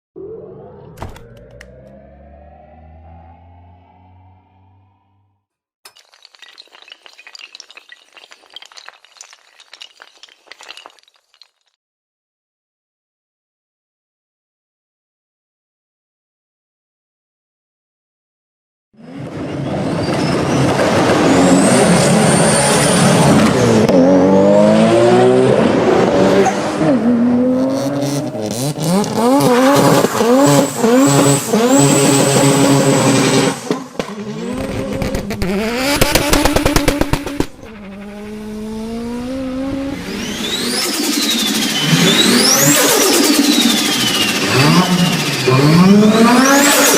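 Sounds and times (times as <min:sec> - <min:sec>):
car engine accelerating hard: 0:00.2 - 0:05.2, 0:20.7 - 0:46.9.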